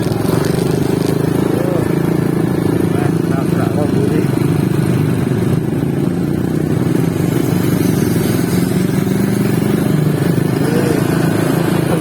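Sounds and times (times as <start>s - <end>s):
motorcycle engines droning: 0.0s - 12.0s.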